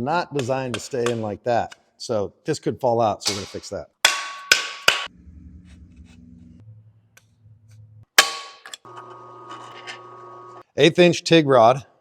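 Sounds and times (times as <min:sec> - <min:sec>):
low steady hum: 0:05.1 - 0:08.3.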